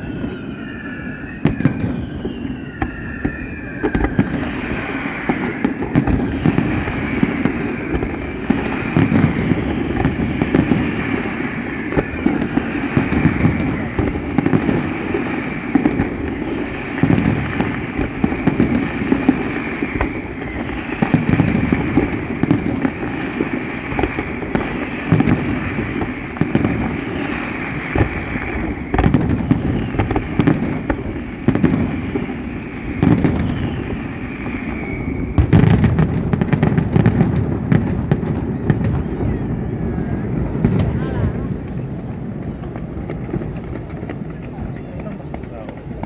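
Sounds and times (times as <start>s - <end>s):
falling firework whistle: 0.0s - 46.0s
fireworks booming: 0.0s - 46.0s
fireworks crackling: 0.0s - 46.0s.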